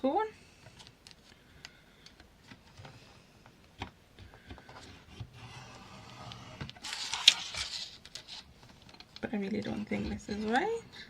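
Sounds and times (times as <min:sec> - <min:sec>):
paper scraping rustle: 0:04.8 - 0:08.9.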